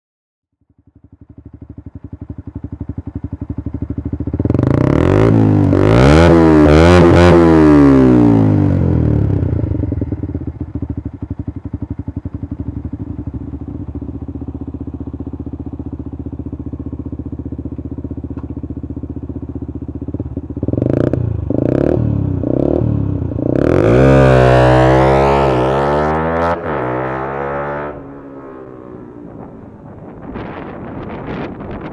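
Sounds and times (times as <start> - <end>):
two-stroke engine revving: 2.7 - 11.1, 20.0 - 28.0.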